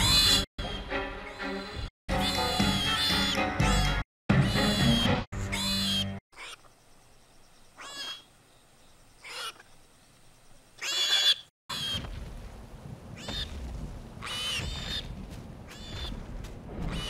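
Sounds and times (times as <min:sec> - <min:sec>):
high-pitched squeaky creature calls: 0:01.3 - 0:06.6.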